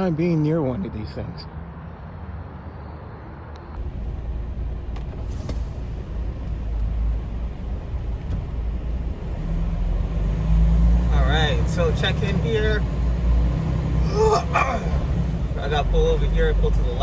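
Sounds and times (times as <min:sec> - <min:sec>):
diesel truck engine rumbling: 0:03.6 - 0:17.0.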